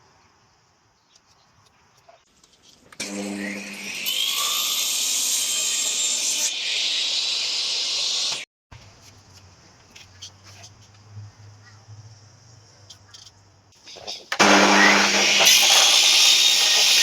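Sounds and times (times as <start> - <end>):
power tool cutting wood: 3.0 - 8.4, 14.0 - 17.0.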